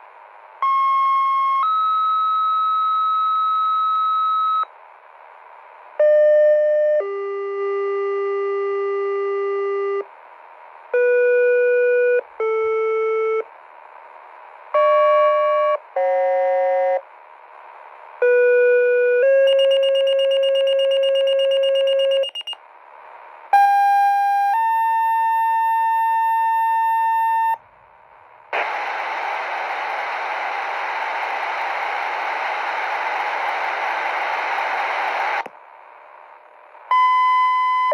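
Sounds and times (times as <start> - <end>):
two-tone radio paging tones: 19.4 - 22.6, 28.6 - 35.5
radio static hiss: 28.5 - 35.5.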